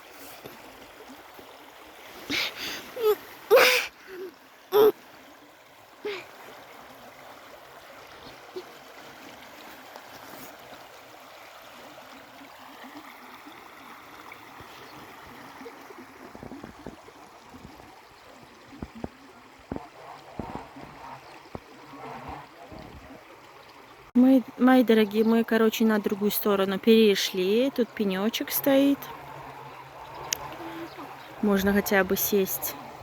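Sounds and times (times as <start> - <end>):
river flowing: 0.0 - 33.0
low thumps and knocks: 18.8 - 21.7.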